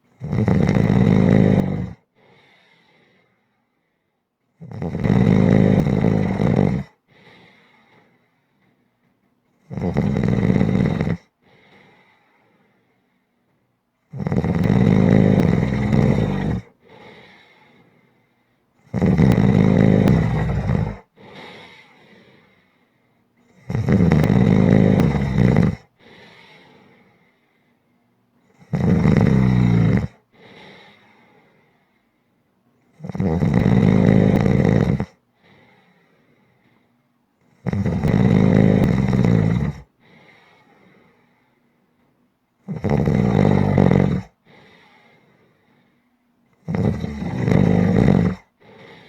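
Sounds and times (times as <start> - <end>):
person snoring loudly: 0.2 - 2.0, 4.6 - 7.0, 9.7 - 11.3, 14.1 - 16.7, 18.8 - 21.8, 23.5 - 25.9, 28.6 - 30.2, 33.0 - 35.2, 37.6 - 39.9, 42.7 - 44.4, 46.6 - 49.0
soft breath: 2.0 - 4.4, 6.8 - 9.2, 11.3 - 13.6, 15.2 - 18.8, 20.0 - 23.6, 25.8 - 28.2, 30.1 - 32.5, 35.2 - 37.2, 39.7 - 42.2, 44.4 - 46.4, 47.2 - 49.0.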